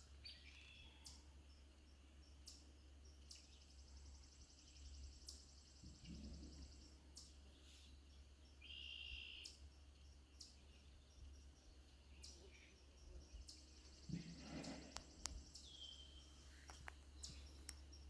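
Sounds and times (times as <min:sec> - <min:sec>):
bird calls: 0:02.3 - 0:18.0
high insect chirps: 0:08.4 - 0:18.0
soft rustle: 0:16.3 - 0:17.9.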